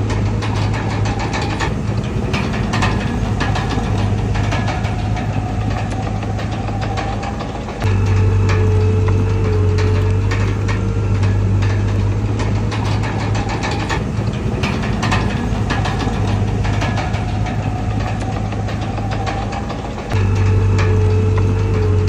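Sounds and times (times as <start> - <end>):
bulldozer diesel engine running: 0.0 - 22.0
metallic clanks and rattles: 0.0 - 22.0.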